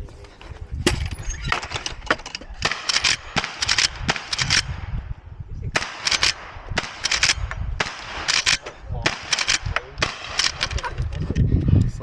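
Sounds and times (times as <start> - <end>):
gunshots: 2.6 - 5.0, 5.8 - 11.0.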